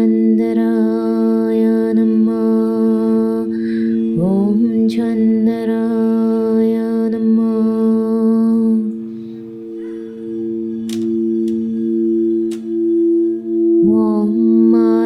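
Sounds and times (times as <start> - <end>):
wordless chanting voice: 0.0 - 12.8
singing bowls ringing: 0.0 - 15.0.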